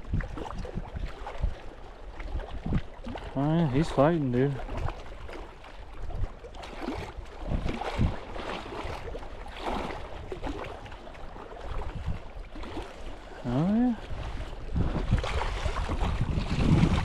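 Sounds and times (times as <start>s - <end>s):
wind rumbling on microphone: 0.0s - 17.0s
soft low thumps: 14.2s - 17.0s.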